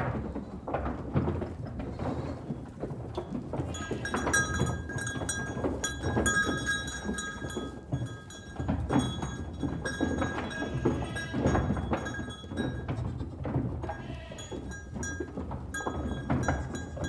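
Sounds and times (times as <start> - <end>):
animals moving clinks and knocks: 3.1 - 17.0
livestock bells clanking: 3.7 - 17.0.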